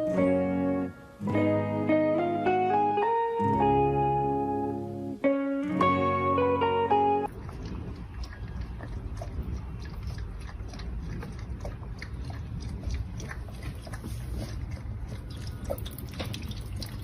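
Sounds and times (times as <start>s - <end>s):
animal chewing: 7.3s - 17.0s.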